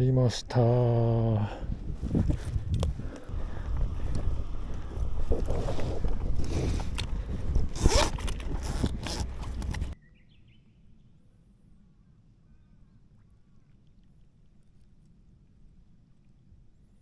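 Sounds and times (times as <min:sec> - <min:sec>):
scraping and rustling of gear: 0:03.4 - 0:10.0
sharp zip-like rasp: 0:05.4 - 0:10.0.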